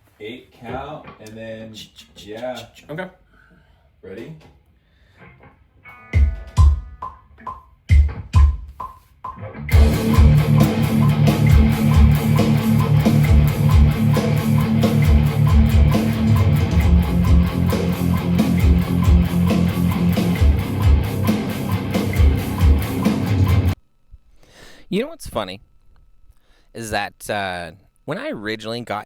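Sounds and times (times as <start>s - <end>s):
guitar-led band music: 5.2s - 7.1s, 9.4s - 23.8s.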